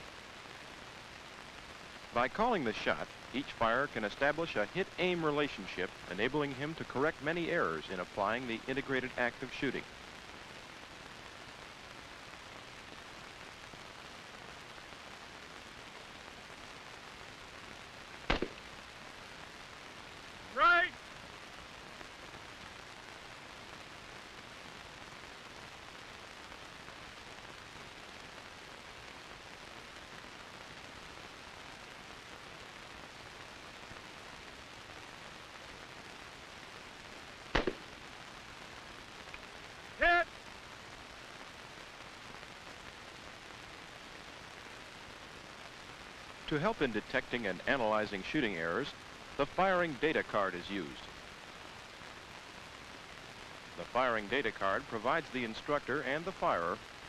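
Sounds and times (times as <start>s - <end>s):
steady background hiss: 0.0s - 57.0s
rifle shot: 18.3s - 18.6s, 37.5s - 38.0s.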